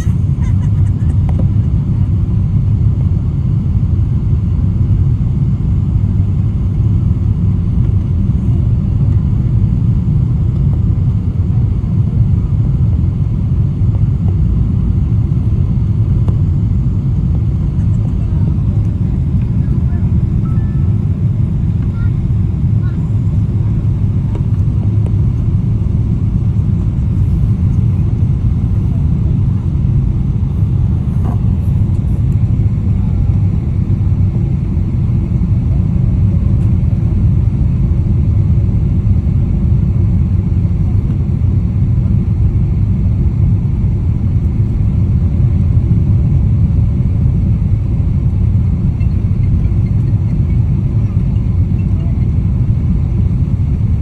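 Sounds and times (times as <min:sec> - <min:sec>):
loud low rumble: 0:12.2 - 0:39.6.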